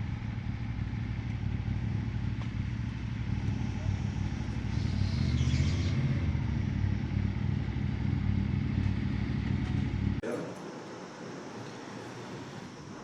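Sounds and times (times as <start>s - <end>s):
motorcycle engine running: 0.0s - 10.2s.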